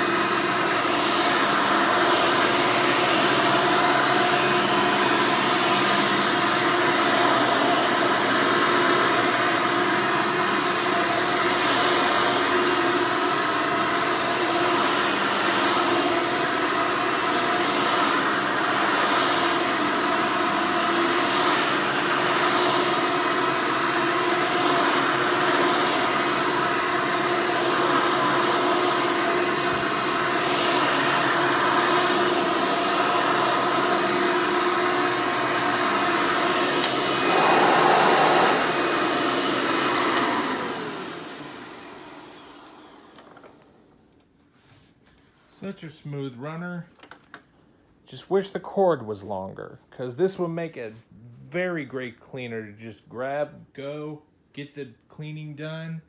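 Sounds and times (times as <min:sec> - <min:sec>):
upright vacuum running: 0:00.0 - 0:44.3.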